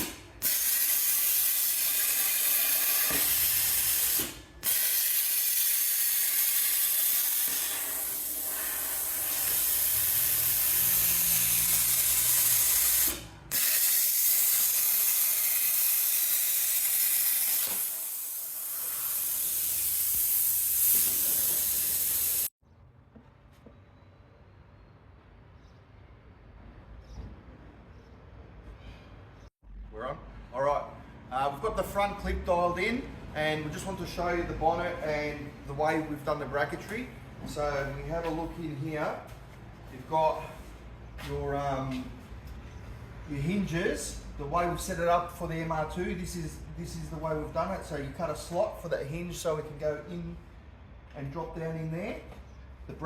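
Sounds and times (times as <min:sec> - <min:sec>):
loud steady hissing: 0:00.4 - 0:22.6.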